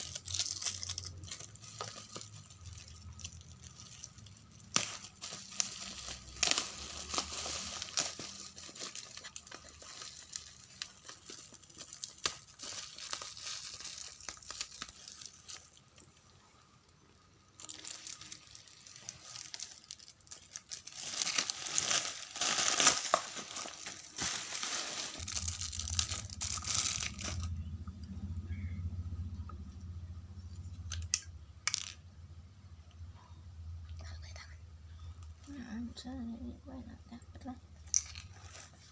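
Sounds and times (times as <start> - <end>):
packaging crinkling and tearing: 0.0 - 16.2, 17.6 - 27.7.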